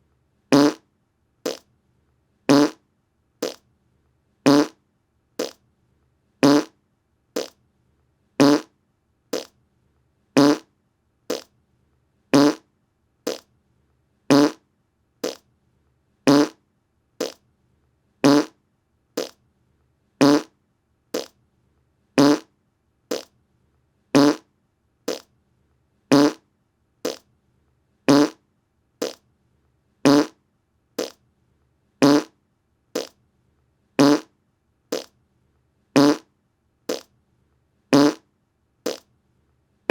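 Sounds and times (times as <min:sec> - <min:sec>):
fart sound: 0:00.5 - 0:00.8, 0:02.5 - 0:02.8, 0:03.4 - 0:03.6, 0:04.5 - 0:04.8, 0:05.4 - 0:05.6, 0:06.4 - 0:06.8, 0:07.4 - 0:07.6, 0:08.4 - 0:08.7, 0:09.3 - 0:09.5, 0:10.4 - 0:10.7, 0:12.4 - 0:12.6, 0:13.3 - 0:13.5, 0:14.3 - 0:14.6, 0:15.2 - 0:15.4, 0:16.3 - 0:16.6, 0:17.2 - 0:17.4, 0:18.2 - 0:18.6, 0:20.2 - 0:20.5, 0:21.2 - 0:21.4, 0:22.2 - 0:22.5, 0:23.1 - 0:23.3, 0:24.2 - 0:24.5, 0:25.1 - 0:25.3, 0:26.1 - 0:26.4, 0:27.0 - 0:27.2, 0:28.1 - 0:28.4, 0:29.0 - 0:29.2, 0:30.1 - 0:30.4, 0:31.0 - 0:31.2, 0:32.0 - 0:32.3, 0:33.0 - 0:33.2, 0:34.0 - 0:34.3, 0:34.9 - 0:35.1, 0:36.0 - 0:36.3, 0:36.9 - 0:37.1, 0:37.9 - 0:38.3, 0:38.9 - 0:39.1.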